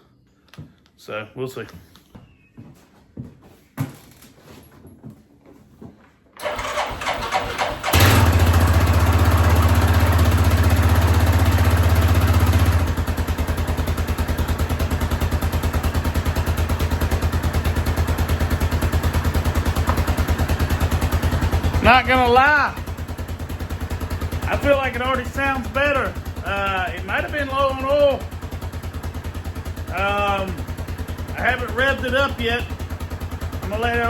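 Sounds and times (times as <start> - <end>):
engine starter cranking: 6.4 - 9.6
engine idling: 6.4 - 34.0.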